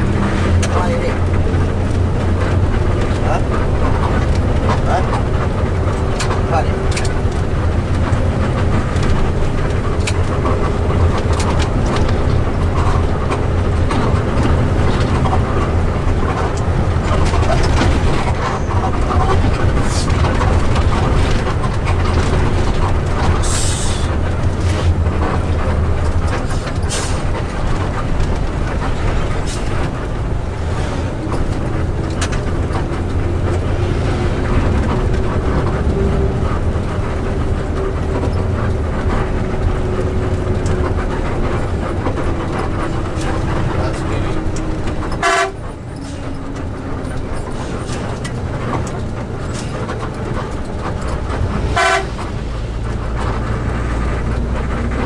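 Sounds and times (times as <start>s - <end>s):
bus diesel engine running: 0.0s - 55.0s
road and traffic noise: 0.0s - 55.0s.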